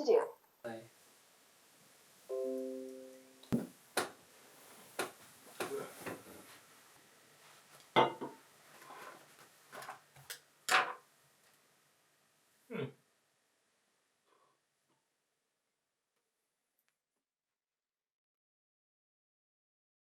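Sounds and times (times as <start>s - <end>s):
held chord: 2.3s - 3.5s
soft background music: 2.3s - 3.6s
piano-like notes: 2.3s - 3.7s.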